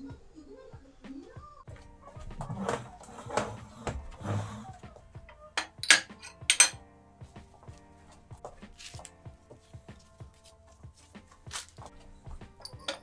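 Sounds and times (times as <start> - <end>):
soft background music: 0.0 - 13.0
kitchenware rustling: 1.8 - 6.8, 8.1 - 13.0
kitchenware clinks: 5.6 - 6.8, 12.6 - 13.0.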